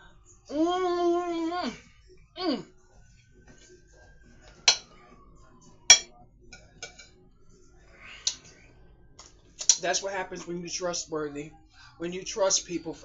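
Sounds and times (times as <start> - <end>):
tableware clinking: 4.7 - 4.9, 5.9 - 7.2.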